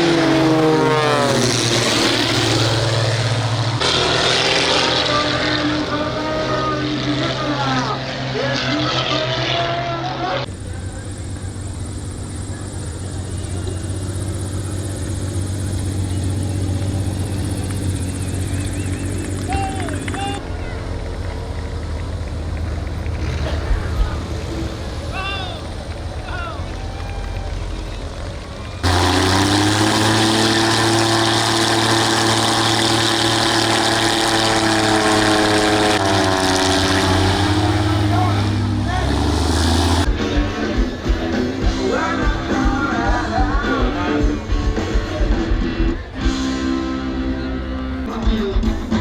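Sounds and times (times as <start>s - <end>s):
aircraft engine drone: 0.0s - 40.2s.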